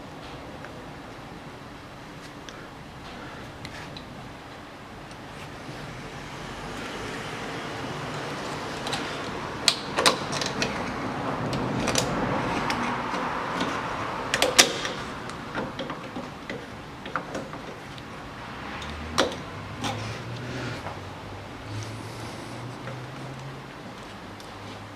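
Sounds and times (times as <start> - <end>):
rushing noise: 16.7 - 23.4.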